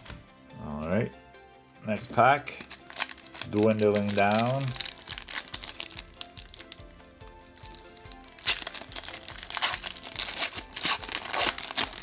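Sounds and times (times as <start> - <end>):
quiet background music: 0.0 - 12.0
card pack wrapper tearing: 2.6 - 12.0.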